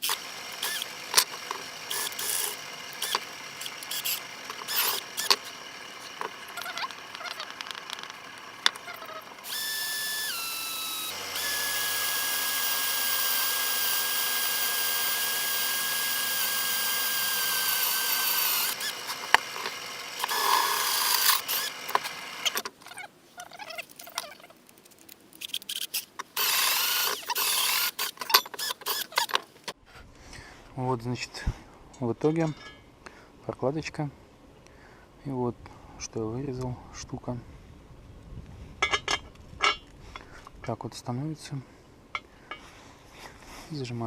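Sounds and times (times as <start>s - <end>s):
power tool whining: 0.0s - 22.8s, 26.2s - 29.7s.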